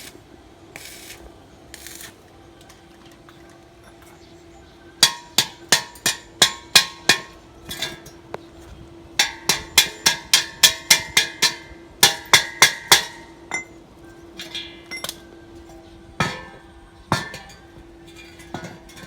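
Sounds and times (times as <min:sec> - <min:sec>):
steady hum: 0:00.0 - 0:19.0
hammer striking metal: 0:05.0 - 0:08.2, 0:09.2 - 0:13.8, 0:16.2 - 0:19.0.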